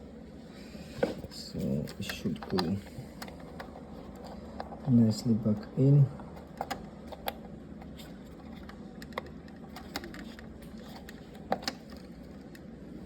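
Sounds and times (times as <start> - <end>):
plastic parts clicking and tapping: 6.4 - 12.6.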